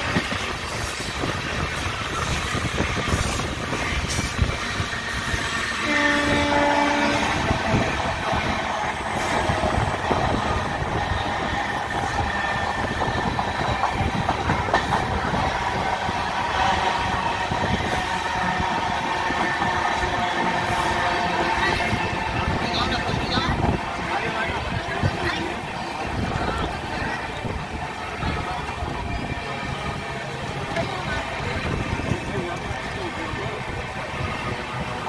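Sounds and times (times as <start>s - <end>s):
train wheels rumbling on rails: 0.0s - 35.0s
train horn: 5.0s - 9.6s.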